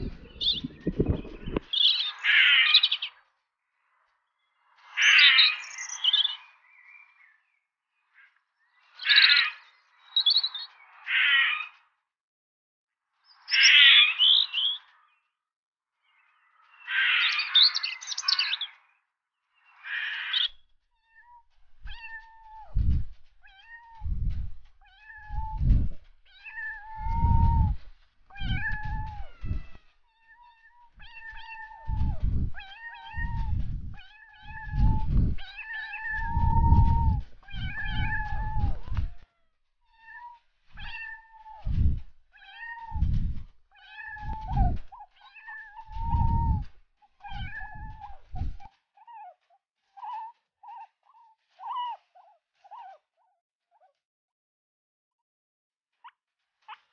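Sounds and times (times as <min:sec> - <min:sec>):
cat meowing: 0:21.0 - 0:39.3, 0:39.9 - 0:49.2.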